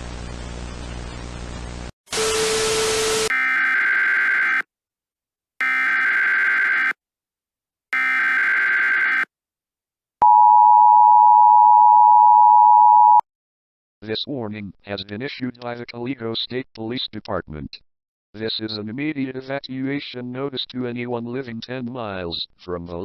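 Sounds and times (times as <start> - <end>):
static: 0.0 - 3.6, 8.0 - 9.2
data bursts: 8.0 - 9.2
two-tone alert signal: 10.2 - 13.2.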